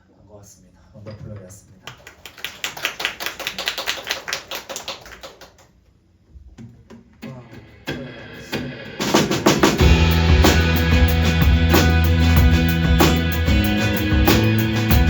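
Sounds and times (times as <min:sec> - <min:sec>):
audience clapping: 0:01.9 - 0:05.8
full band with bass and drums: 0:09.0 - 0:15.0
guitar notes: 0:09.8 - 0:15.0.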